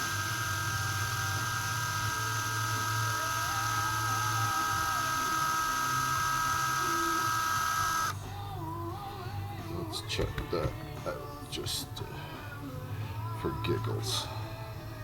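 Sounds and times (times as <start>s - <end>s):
electric drill whining: 0.0s - 8.2s.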